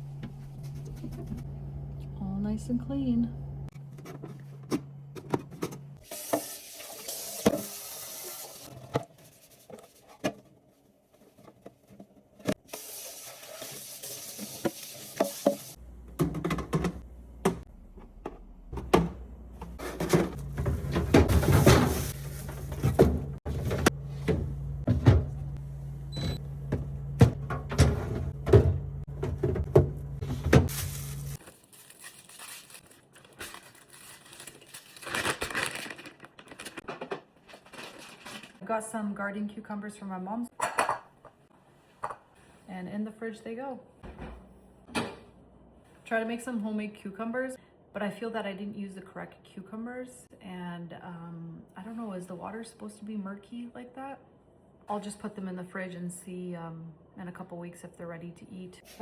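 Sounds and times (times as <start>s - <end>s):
containers and shelves clattering: 3.7s - 7.8s, 8.6s - 25.6s, 26.7s - 38.6s.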